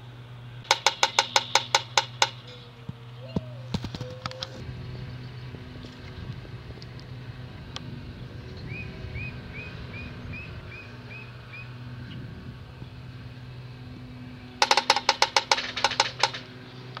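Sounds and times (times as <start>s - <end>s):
woodpecker hammering on wood: 0.6s - 4.4s, 14.6s - 17.0s.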